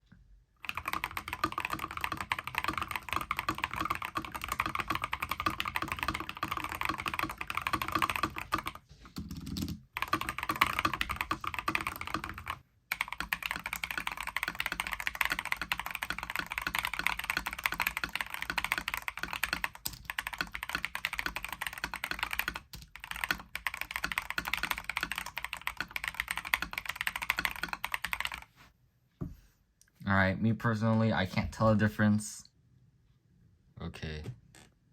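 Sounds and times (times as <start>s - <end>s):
mechanical keyboard typing: 0.6s - 28.5s.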